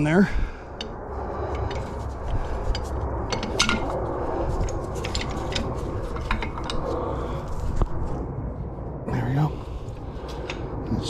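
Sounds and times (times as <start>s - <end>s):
low rumble: 0.0s - 11.0s
metal clinks and knocks: 0.8s - 7.0s.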